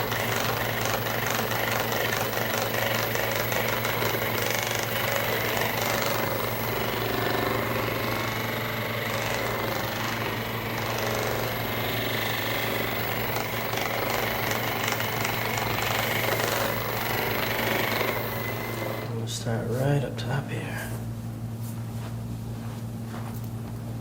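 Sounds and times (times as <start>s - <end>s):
small electric motor buzzing: 0.0s - 19.2s.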